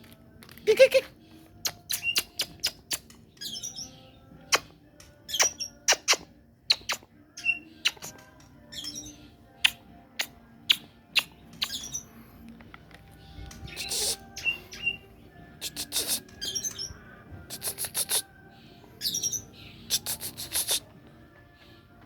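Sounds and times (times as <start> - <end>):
bird sharp chips: 1.6 - 12.1, 13.5 - 15.0, 15.6 - 18.3, 19.0 - 20.9
bird twittering: 5.3 - 12.1, 13.2 - 18.3, 19.0 - 20.9.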